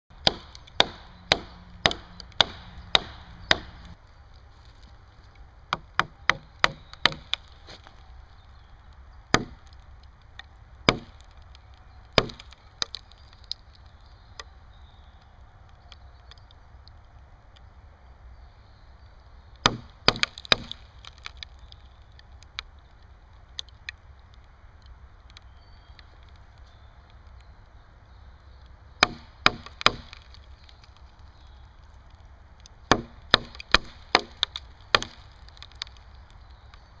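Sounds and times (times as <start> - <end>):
hatchet chopping wood: 0.2 - 4.0, 5.7 - 7.5, 9.3 - 9.8, 10.9 - 11.3, 12.2 - 13.0, 19.6 - 21.4, 29.0 - 30.7, 32.9 - 36.0.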